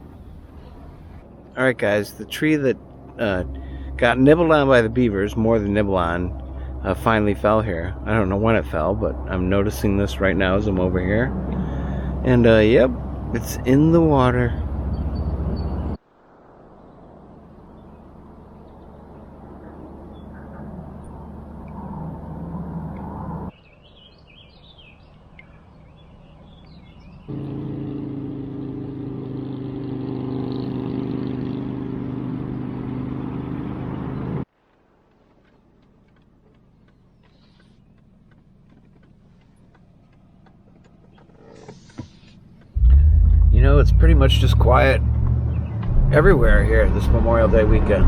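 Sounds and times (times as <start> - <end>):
vehicle engine running: 2.8 - 16.0, 27.2 - 34.4, 35.0 - 48.0
birds chirping: 3.2 - 16.0, 16.8 - 21.7, 23.5 - 27.4, 35.0 - 48.0.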